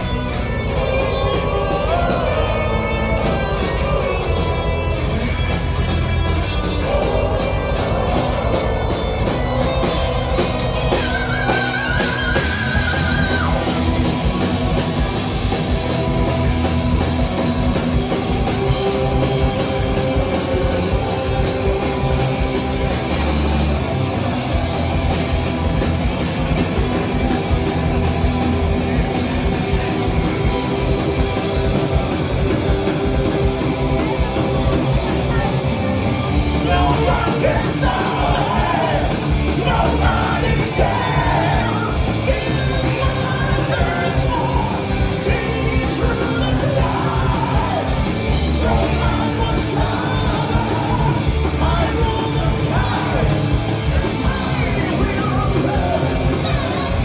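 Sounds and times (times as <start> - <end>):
heavy metal band playing live: 0.0 - 57.0
person singing: 28.6 - 57.0.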